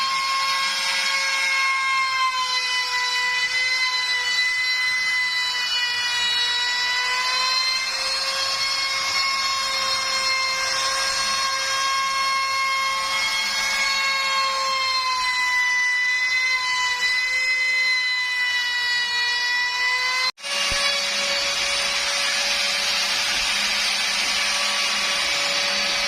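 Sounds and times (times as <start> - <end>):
router spindle whining: 0.0 - 26.0
hissing cutting noise: 20.4 - 26.0.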